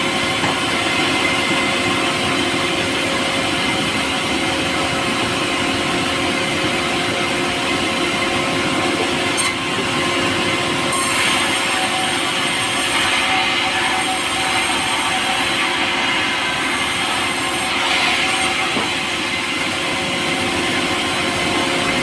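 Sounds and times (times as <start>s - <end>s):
power saw cutting wood: 8.9s - 22.0s.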